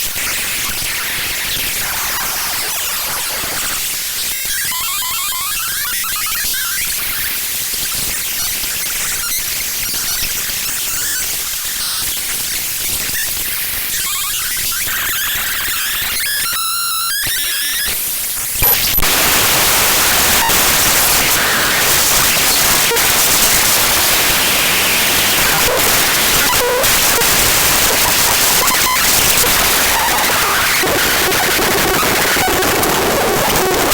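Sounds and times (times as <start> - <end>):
loud dense static hiss: 0.0 - 5.9, 13.4 - 33.9.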